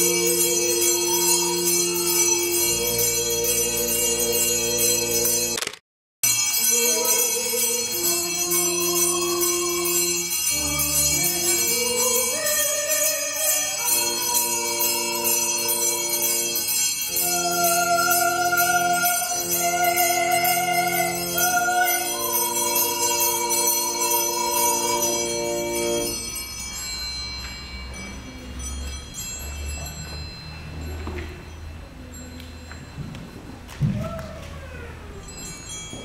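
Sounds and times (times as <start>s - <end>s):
bells jingling: 0.0s - 5.6s, 6.2s - 33.7s, 34.7s - 36.0s
choir singing held chords: 0.0s - 5.6s, 6.5s - 26.3s.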